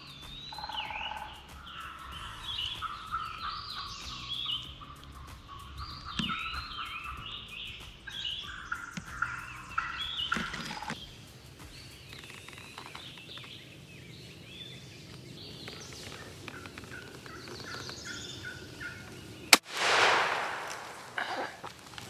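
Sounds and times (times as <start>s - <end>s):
turkey calls and gobbling: 0.0s - 19.6s
loud shotgun shot: 19.5s - 21.5s.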